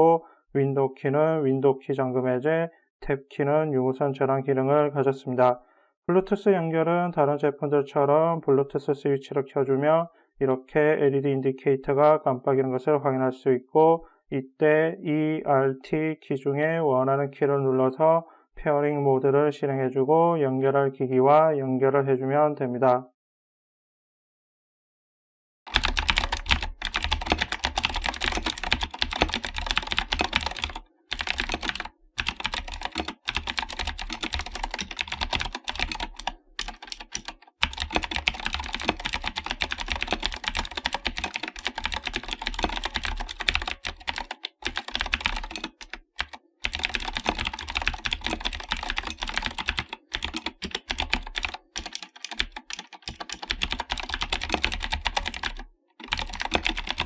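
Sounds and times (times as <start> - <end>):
clicky keyboard typing: 25.7 - 57.0.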